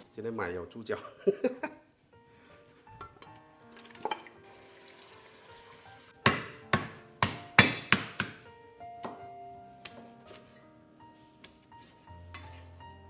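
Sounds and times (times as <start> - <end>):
background music: 0.4 - 13.0
sharp knocks: 6.3 - 8.4.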